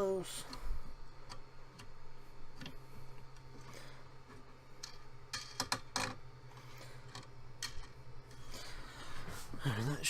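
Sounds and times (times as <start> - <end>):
steady low hum: 0.0 - 10.0.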